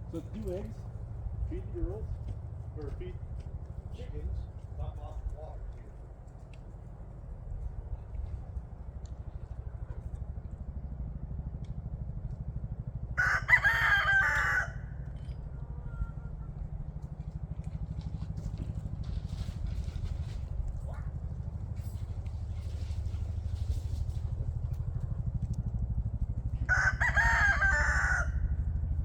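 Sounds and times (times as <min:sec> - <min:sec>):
steady low rumble: 0:00.0 - 0:29.0
rooster crowing: 0:13.2 - 0:15.2, 0:26.6 - 0:28.8.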